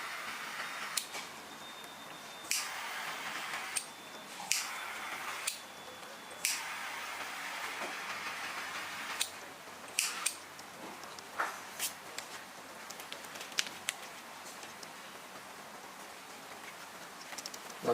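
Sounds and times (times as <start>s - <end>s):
heat tool blowing hiss: 6.4s - 9.3s.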